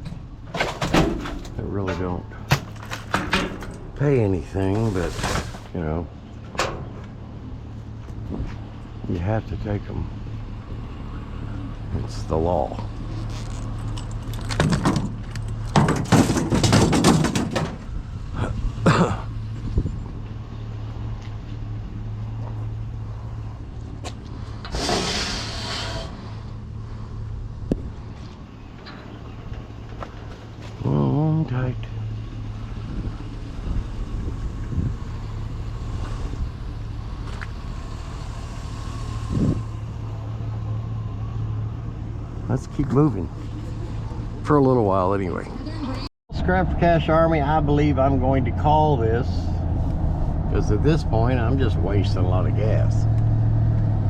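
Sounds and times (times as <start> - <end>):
knocks and rustles: 0.0 - 4.0, 13.1 - 18.0
steady low hum: 0.0 - 54.0
truck engine running: 0.0 - 54.0.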